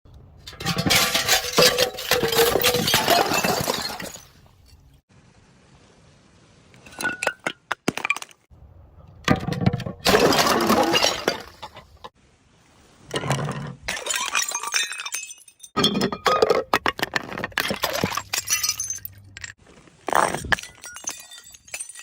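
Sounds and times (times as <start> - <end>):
glass bottles shattering: 0.5 - 5.0, 9.4 - 12.0, 13.9 - 22.0
glass shards clinking: 0.5 - 5.0, 17.6 - 19.6, 20.3 - 22.0.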